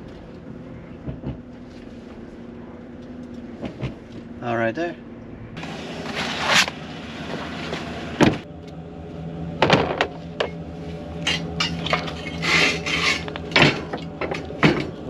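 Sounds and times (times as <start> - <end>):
low machine hum: 0.0 - 15.0
scraping rustle: 10.8 - 15.0
metal parts knocking and clanking: 11.2 - 15.0.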